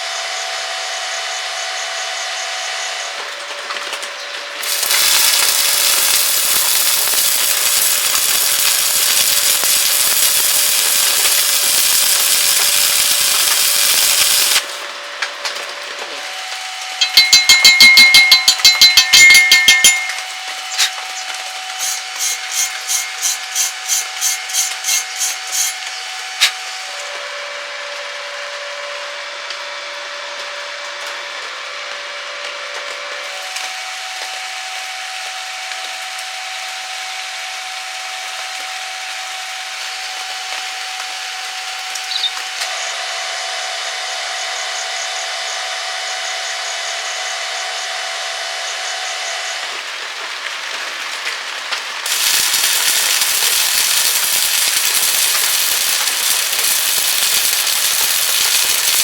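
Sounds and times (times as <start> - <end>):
arc welding crackling hiss: 4.6 - 14.9, 16.2 - 27.0, 33.2 - 59.0.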